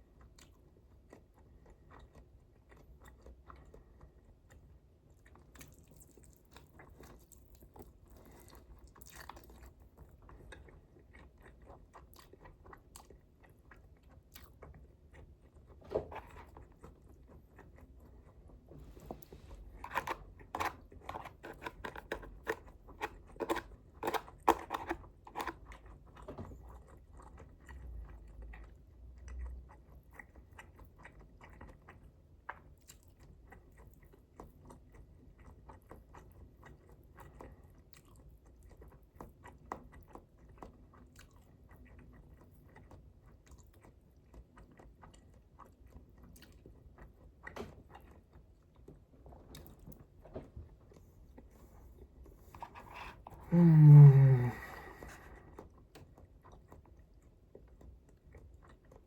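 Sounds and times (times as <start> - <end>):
person chewing: 0.0 - 49.9, 50.8 - 59.0
person crunching food: 19.8 - 26.2.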